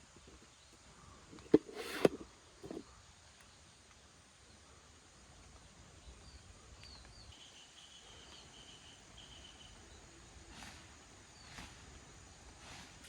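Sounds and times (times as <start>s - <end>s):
soft rustle: 1.4s - 2.8s.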